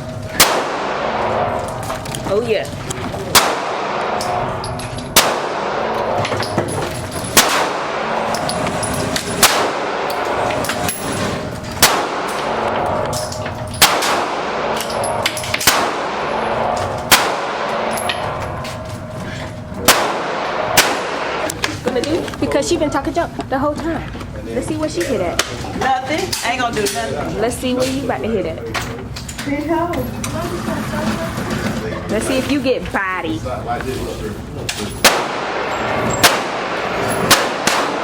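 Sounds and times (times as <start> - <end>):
gunshots with ringing echo: 0.3 - 1.8, 3.3 - 6.5, 7.2 - 21.5, 35.0 - 38.0.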